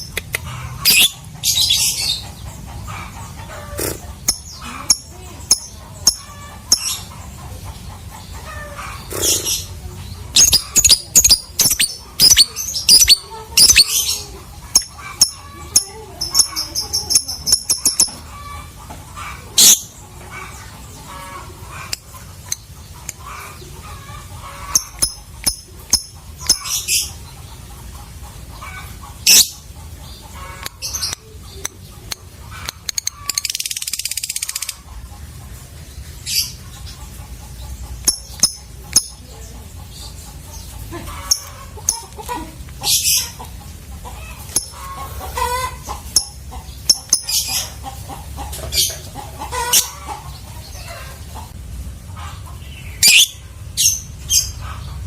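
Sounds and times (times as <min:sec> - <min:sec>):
harsh bird chattering call: 0:00.0 - 0:27.7, 0:28.5 - 0:35.0, 0:36.2 - 0:51.5, 0:52.7 - 0:54.6
lovebird chirps and squeaks: 0:00.8 - 0:02.1, 0:10.3 - 0:15.4, 0:16.4 - 0:18.2, 0:24.6 - 0:27.0.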